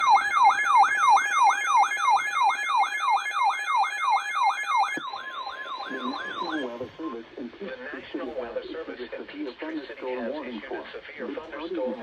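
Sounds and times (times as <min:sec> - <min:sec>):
electronic siren falling sweeps: 0:00.0 - 0:06.7
steady siren tone: 0:00.0 - 0:07.0.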